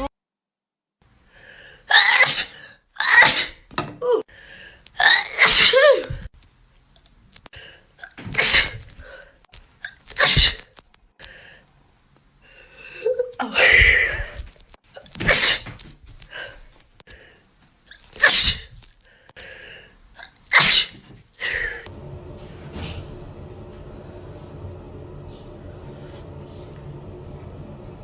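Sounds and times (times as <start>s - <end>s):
person sneezing: 1.9s - 3.6s, 18.2s - 18.7s, 20.2s - 21.9s.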